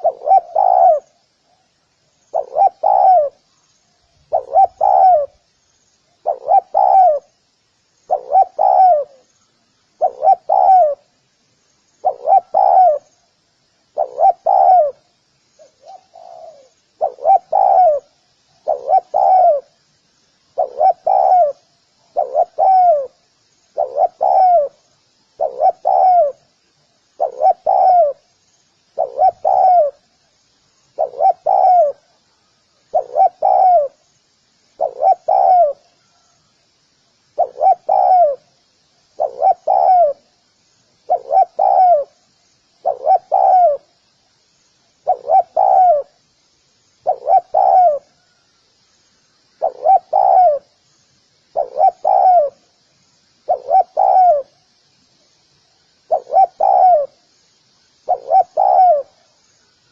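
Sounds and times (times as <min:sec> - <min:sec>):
dove cooing: 0:00.0 - 0:01.2, 0:02.3 - 0:03.5, 0:04.2 - 0:05.4, 0:06.2 - 0:07.4, 0:08.1 - 0:09.3, 0:10.0 - 0:11.1, 0:12.0 - 0:13.1, 0:13.9 - 0:19.8, 0:20.6 - 0:23.2, 0:23.8 - 0:26.5, 0:27.2 - 0:28.3, 0:29.0 - 0:30.0, 0:30.9 - 0:32.2, 0:32.9 - 0:34.0, 0:34.8 - 0:36.3, 0:37.4 - 0:38.5, 0:39.1 - 0:40.3, 0:41.0 - 0:42.2, 0:42.8 - 0:43.9, 0:45.0 - 0:46.2, 0:47.0 - 0:48.4, 0:49.6 - 0:50.7, 0:51.5 - 0:52.6, 0:53.4 - 0:54.6, 0:56.1 - 0:57.2, 0:58.0 - 0:59.3.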